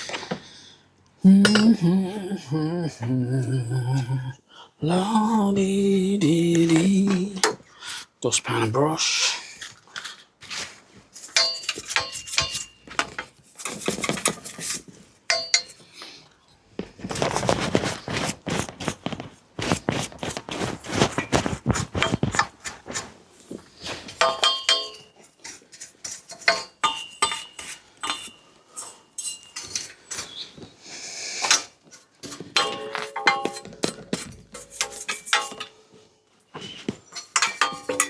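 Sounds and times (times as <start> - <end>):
brush sweeping: 17.2 - 23.2.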